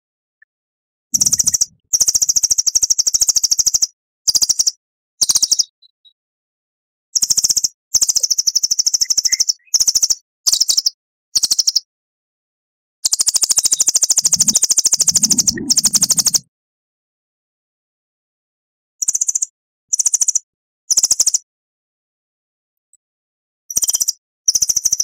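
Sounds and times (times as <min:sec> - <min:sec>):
songbird trilling: 0:01.2 - 0:01.8, 0:09.0 - 0:09.9, 0:13.6 - 0:16.4.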